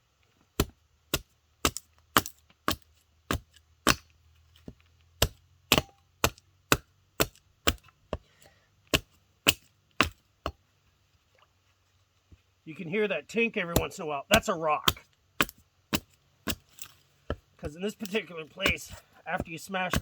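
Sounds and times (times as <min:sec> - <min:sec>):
hatchet chopping wood: 0:00.5 - 0:10.6, 0:13.6 - 0:20.0
blade hitting rock: 0:00.6 - 0:08.2, 0:08.9 - 0:10.6, 0:13.7 - 0:20.0.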